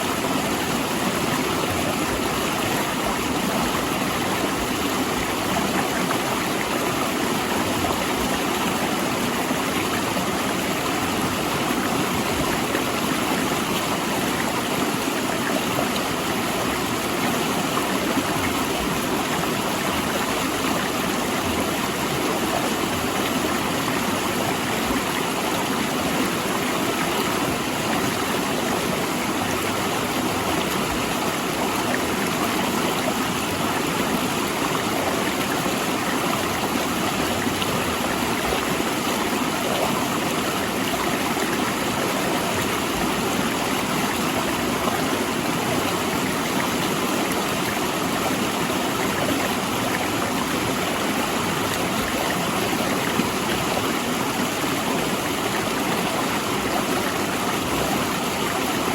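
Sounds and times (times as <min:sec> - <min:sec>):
river rushing over rocks: 0:00.0 - 0:58.9.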